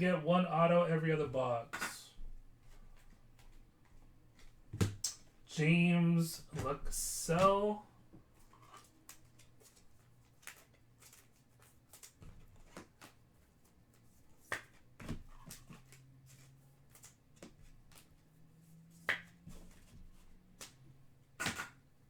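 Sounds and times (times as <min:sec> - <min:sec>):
trading cards clicking and snapping: 0:08.6 - 0:13.2, 0:20.6 - 0:21.8.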